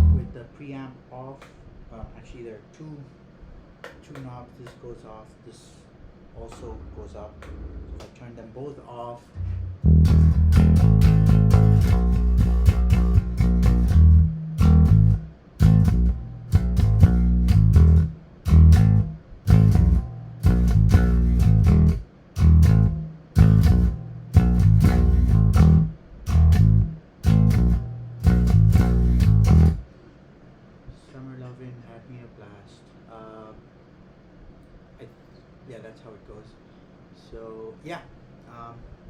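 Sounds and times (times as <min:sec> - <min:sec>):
electric bass riff: 0:00.0 - 0:00.4, 0:09.4 - 0:29.8.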